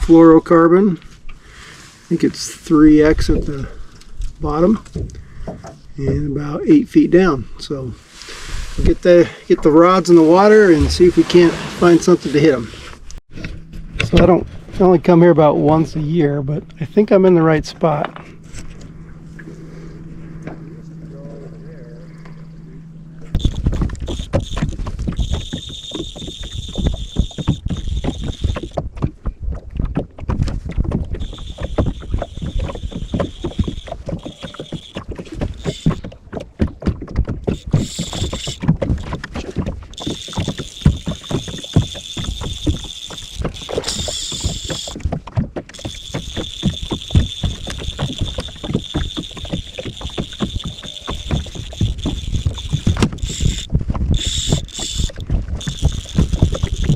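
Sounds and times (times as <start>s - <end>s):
waves slapping boat hull: 8.0s - 13.0s, 23.2s - 56.9s
high-pitched whine: 16.8s - 28.8s, 31.1s - 36.0s, 37.5s - 39.2s, 39.9s - 45.0s, 45.8s - 56.9s
wind buffeting microphone: 23.3s - 56.9s.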